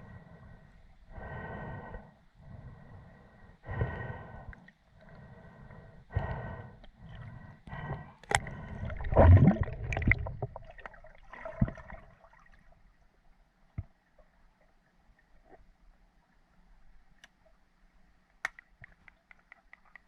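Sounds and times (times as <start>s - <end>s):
water gurgling and sloshing: 0.0s - 20.0s.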